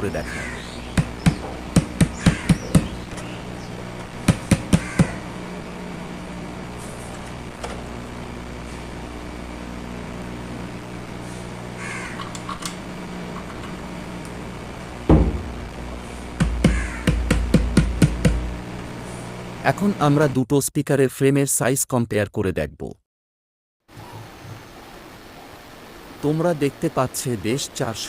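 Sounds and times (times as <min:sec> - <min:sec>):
steady low hum: 0:00.0 - 0:20.3
loud thump: 0:15.1 - 0:15.8
fingers tapping speaker cones: 0:16.4 - 0:18.5.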